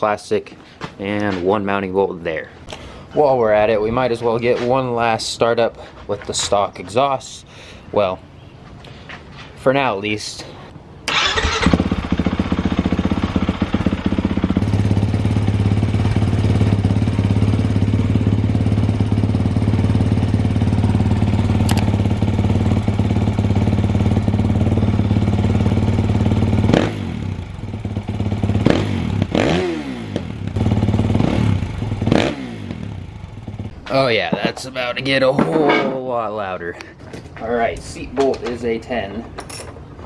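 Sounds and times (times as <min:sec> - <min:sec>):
engine revving: 0:11.1 - 0:33.8
motorcycle engine idling: 0:11.2 - 0:33.8.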